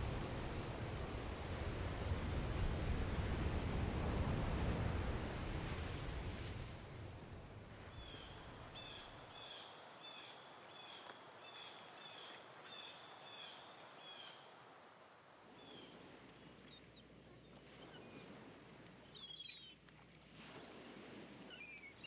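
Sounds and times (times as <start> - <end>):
faint outdoor hiss: 5.0 - 22.0.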